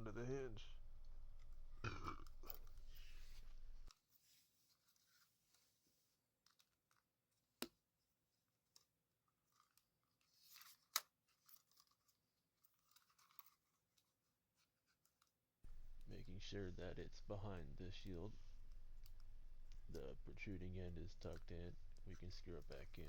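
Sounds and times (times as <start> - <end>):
plastic clicks and scratches: 6.4 - 7.8, 8.6 - 16.4, 17.5 - 23.0.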